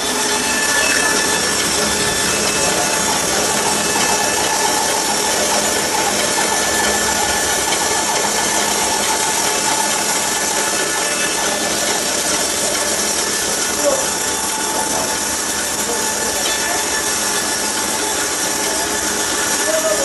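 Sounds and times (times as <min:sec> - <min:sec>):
woodworking power tool whirring: 0:00.0 - 0:20.0.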